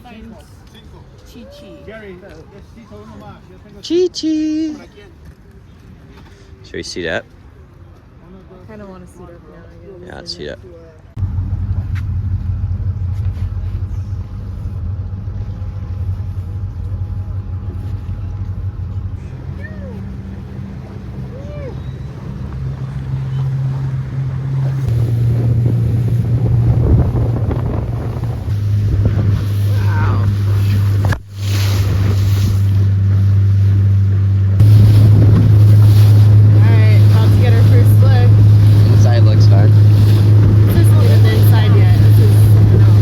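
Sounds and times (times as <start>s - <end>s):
wind: 0.0s - 43.0s
motorboat engine rumbling: 11.1s - 43.0s
water noise: 11.2s - 43.0s.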